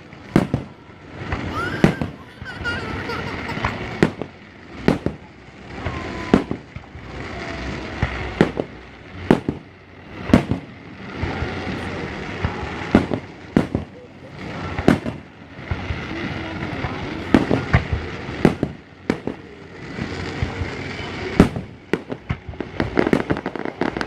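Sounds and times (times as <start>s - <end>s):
crowd murmur: 0.0s - 24.0s
fireworks booming: 0.0s - 24.0s.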